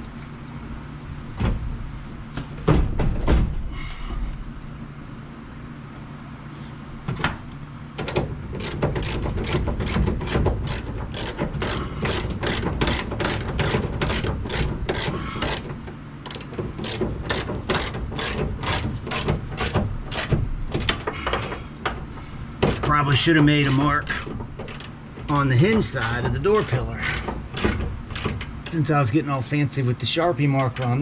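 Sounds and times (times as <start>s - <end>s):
ratchet wrench clicking: 8.6s - 20.3s, 23.6s - 28.8s.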